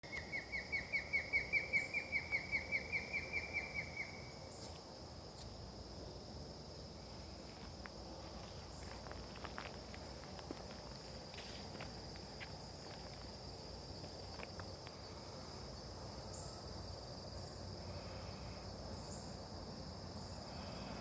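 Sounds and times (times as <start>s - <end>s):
repeated bird call notes: 0.0s - 4.4s
high insect drone: 0.0s - 21.0s.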